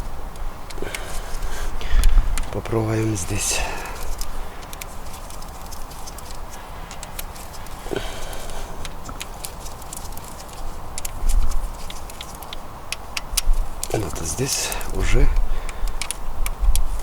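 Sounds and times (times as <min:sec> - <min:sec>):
wrench clicking on bolts: 0:03.4 - 0:16.8.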